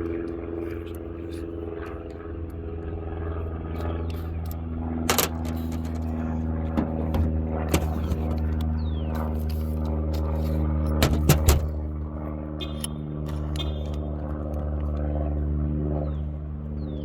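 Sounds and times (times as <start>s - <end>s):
steady motor hum: 0.0s - 17.0s
sharp knocks: 5.1s - 8.4s, 11.0s - 11.7s.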